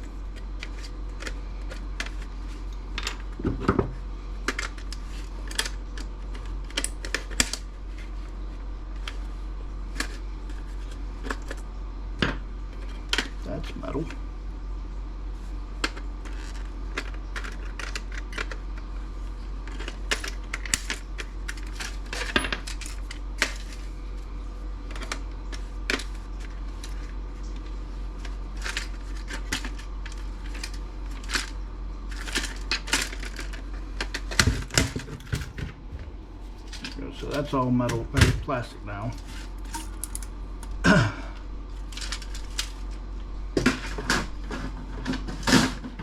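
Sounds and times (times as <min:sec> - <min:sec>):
steady low hum: 0:00.0 - 0:46.0
clicks of small parts handled: 0:39.1 - 0:40.8.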